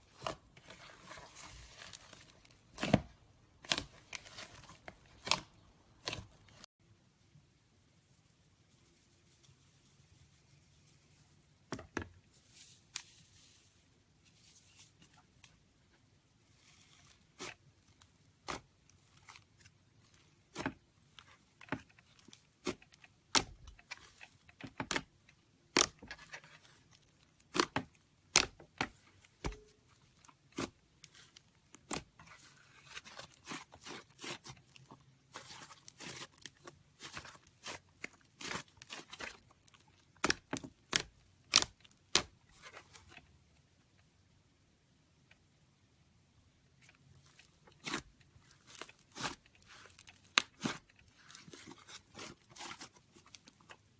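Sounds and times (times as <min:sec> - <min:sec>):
soft crackle: 0:12.3 - 0:24.6, 0:28.8 - 0:44.2, 0:46.7 - 0:53.9.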